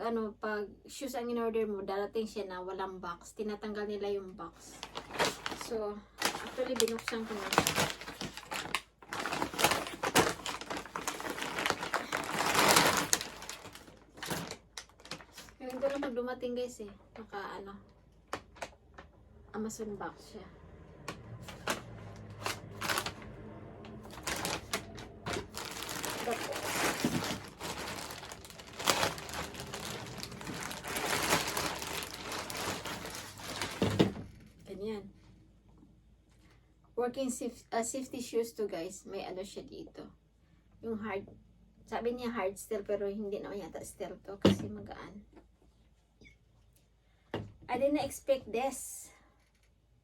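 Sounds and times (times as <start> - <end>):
packaging rustling: 4.7 - 16.2, 18.3 - 19.1, 21.4 - 34.3.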